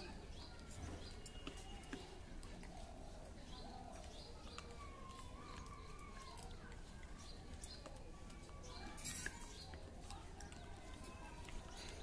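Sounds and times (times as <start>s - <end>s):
birds chirping: 0.0s - 12.0s.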